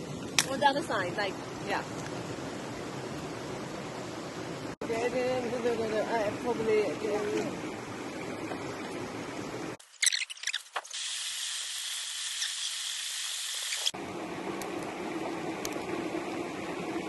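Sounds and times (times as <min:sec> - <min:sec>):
food sizzling in a pan: 0:10.9 - 0:14.0.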